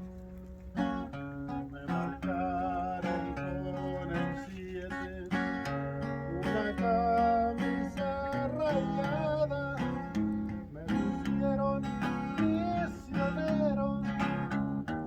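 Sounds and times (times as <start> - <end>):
acoustic guitar strumming chords: 0.0 - 15.0.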